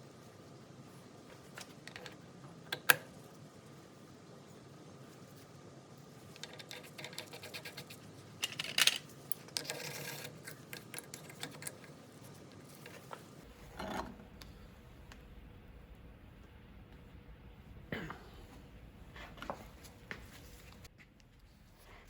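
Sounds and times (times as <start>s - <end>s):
small metal parts clicking: 6.4s - 11.9s
metal parts clattering: 8.4s - 11.4s.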